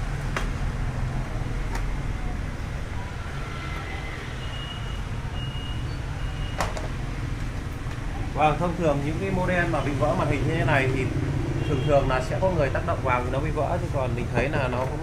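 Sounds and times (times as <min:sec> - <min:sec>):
low rumbling background noise: 0:00.0 - 0:15.0.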